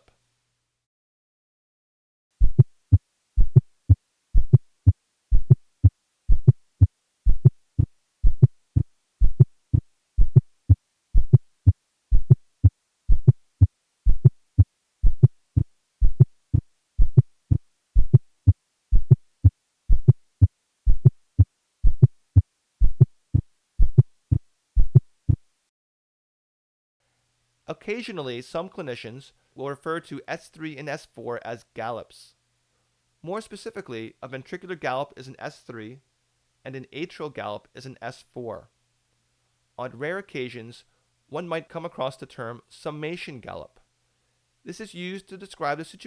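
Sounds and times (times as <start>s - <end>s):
fourth heart sound: 2.4s - 2.8s, 3.4s - 5.6s, 6.3s - 6.6s, 7.3s - 12.4s, 13.1s - 13.4s, 14.0s - 18.2s, 18.9s - 19.2s, 19.9s - 22.1s, 22.8s - 25.4s
heartbeat thumps: 2.4s - 5.6s, 6.3s - 12.4s, 13.1s - 19.2s, 19.9s - 22.2s, 22.8s - 25.5s.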